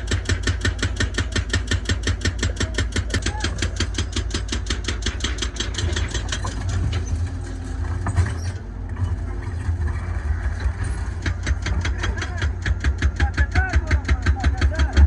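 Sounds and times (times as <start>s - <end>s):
hydraulic breaker hammering concrete: 0.0s - 7.3s, 10.7s - 15.0s
diesel engine hum: 0.0s - 15.0s.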